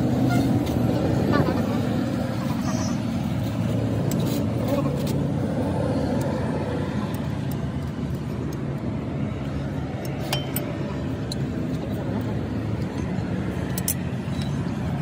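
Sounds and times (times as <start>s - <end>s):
low engine-like drone: 0.0s - 15.0s
light metallic clinks: 10.0s - 11.4s, 12.9s - 14.8s.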